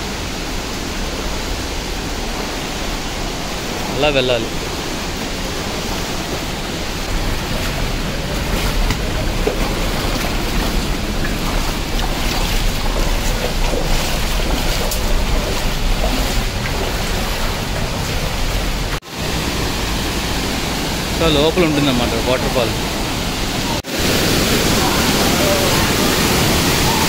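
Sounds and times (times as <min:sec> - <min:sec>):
stream running: 0:00.0 - 0:27.0
waterfall rushing: 0:00.0 - 0:27.0
low rumble: 0:04.6 - 0:21.2.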